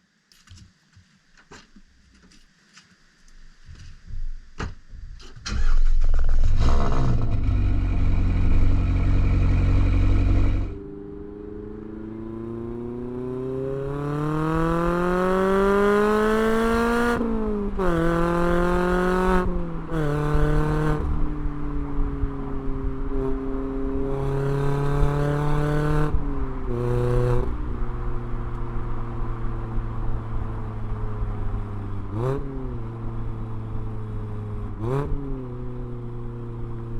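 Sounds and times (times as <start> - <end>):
car engine starting and revving: 5.3 - 21.5.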